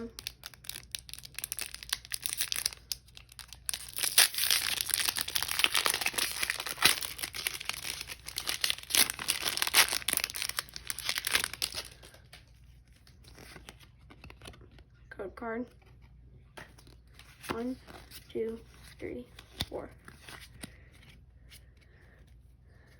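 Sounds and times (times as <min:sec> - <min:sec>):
foil wrapper crinkling and tearing: 0:00.0 - 0:14.7.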